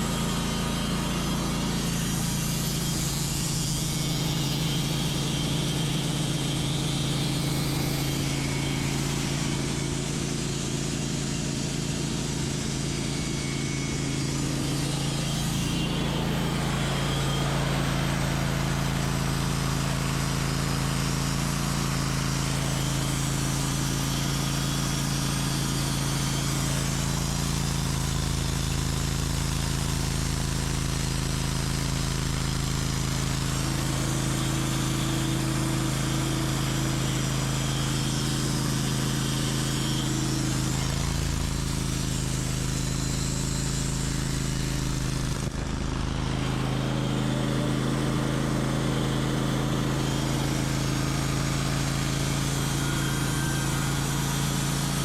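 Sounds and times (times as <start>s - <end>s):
sawmill engine humming: 0.0s - 55.0s.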